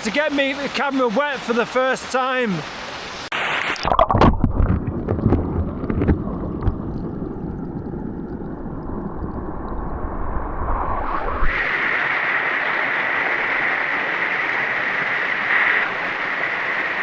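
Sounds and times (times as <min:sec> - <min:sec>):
brook water splashing: 0:00.0 - 0:09.4
underwater knocks and clicks: 0:03.8 - 0:08.5
muffled underwater water rumble: 0:03.8 - 0:17.0.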